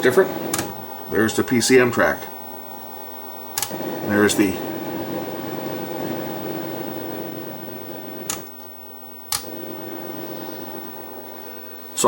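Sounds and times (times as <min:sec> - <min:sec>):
tape playback hum and hiss: 0:00.0 - 0:12.0
sharp click: 0:03.6 - 0:03.8.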